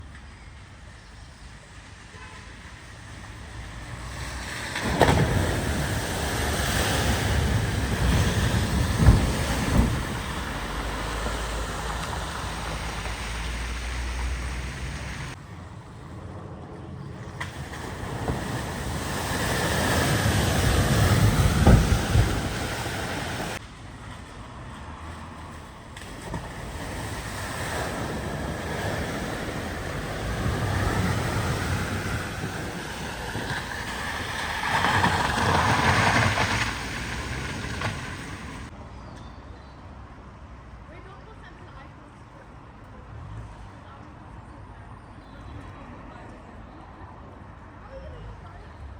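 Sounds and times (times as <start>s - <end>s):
water splashing from wheels: 1.9s - 38.7s.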